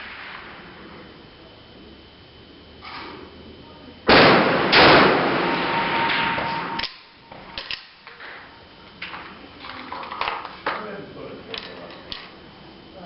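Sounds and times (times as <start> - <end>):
rifle shots echoing: 4.1 - 6.9.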